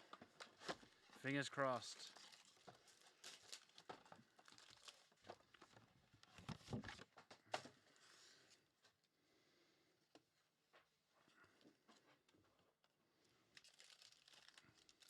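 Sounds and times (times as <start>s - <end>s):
card pack wrapper crinkling: 2.1s - 5.7s, 13.5s - 15.0s.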